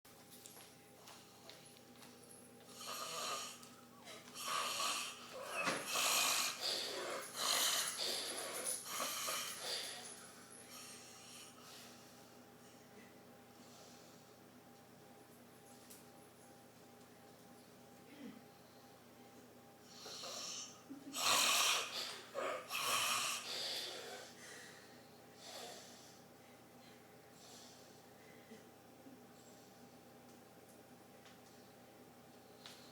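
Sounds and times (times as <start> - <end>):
man snoring heavily: 2.8 - 3.6, 4.4 - 9.7, 21.2 - 24.3.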